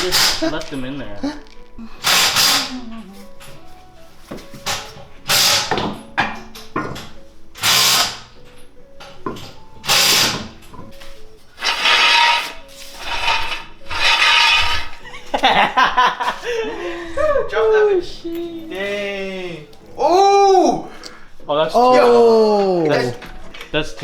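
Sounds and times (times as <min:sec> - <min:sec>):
power tool running in bursts: 0:00.0 - 0:00.7, 0:02.0 - 0:03.0, 0:04.6 - 0:06.0, 0:07.6 - 0:08.4, 0:09.8 - 0:10.6, 0:11.6 - 0:15.0.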